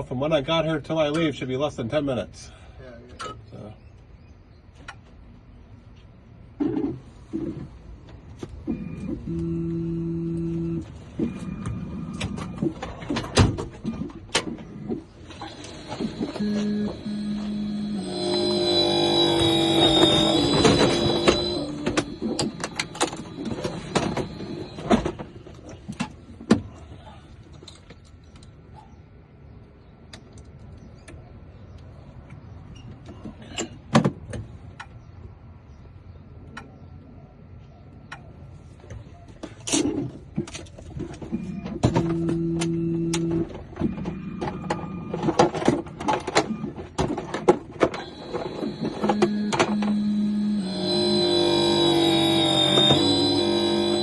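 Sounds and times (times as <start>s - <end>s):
key cutting machine motor hum: 15.3s - 25.1s, 47.9s - 54.0s.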